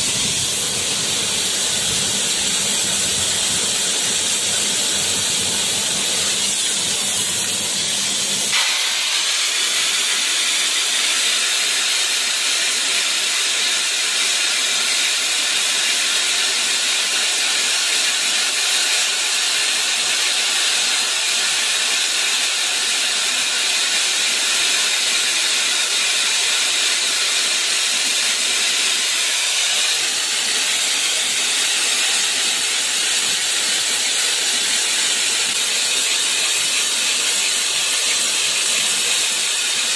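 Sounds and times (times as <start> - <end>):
spray gun hissing: 0.0 - 12.4, 24.0 - 39.9.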